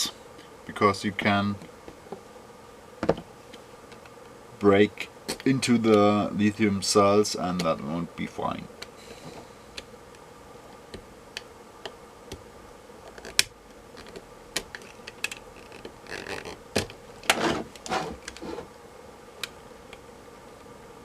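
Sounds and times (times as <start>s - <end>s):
short scrapes: 17.3s - 18.7s.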